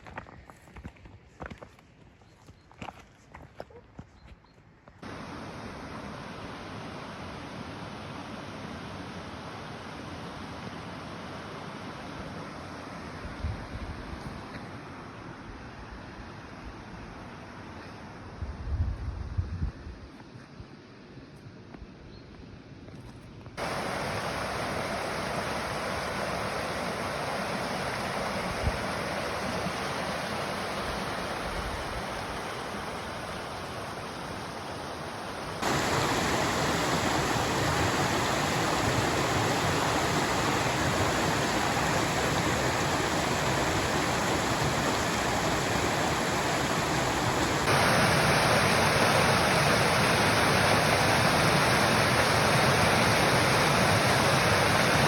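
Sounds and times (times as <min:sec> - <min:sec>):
waterfall rushing: 0:23.6 - 0:55.0.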